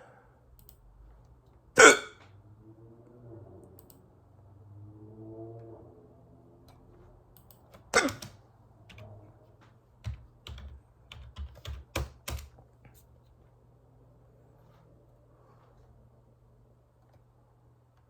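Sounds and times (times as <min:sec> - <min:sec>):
person hiccuping: 0:01.8 - 0:02.3, 0:07.9 - 0:08.3.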